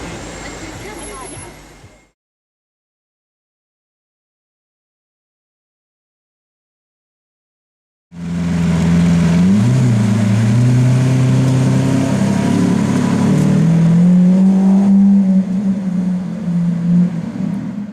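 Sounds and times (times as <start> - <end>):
car exhaust accelerating: 8.2 - 17.9.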